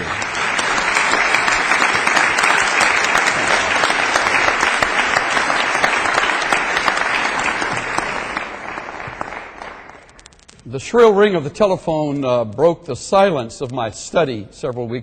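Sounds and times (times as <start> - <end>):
audience applauding: 0.0 - 10.3.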